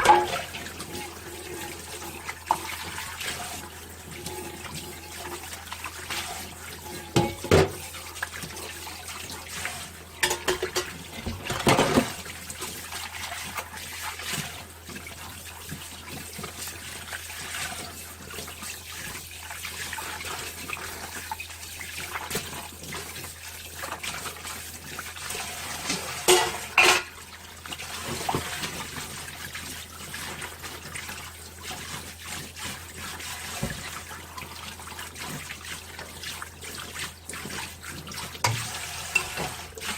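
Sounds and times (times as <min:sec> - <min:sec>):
dishes clattering: 0:00.0 - 0:00.6, 0:06.9 - 0:07.8, 0:10.2 - 0:12.2, 0:25.9 - 0:27.2, 0:38.4 - 0:39.6
tap water running: 0:00.0 - 0:39.9.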